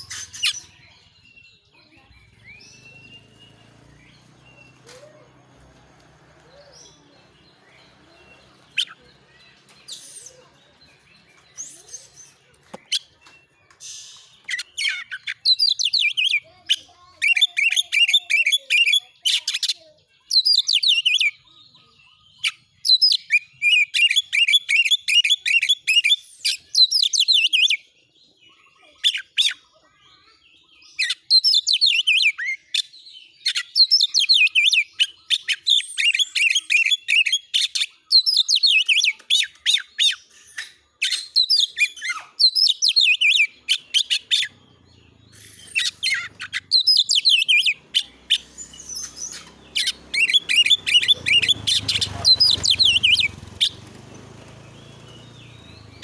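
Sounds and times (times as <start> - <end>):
bird singing rapid high notes: 0.0 - 5.8, 6.4 - 21.5, 33.5 - 56.0.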